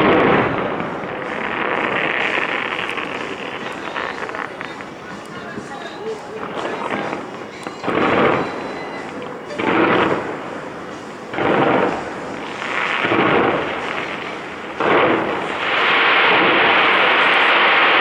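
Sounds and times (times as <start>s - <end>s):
fireworks booming: 0.0s - 18.0s
loud rushing din: 0.0s - 18.0s.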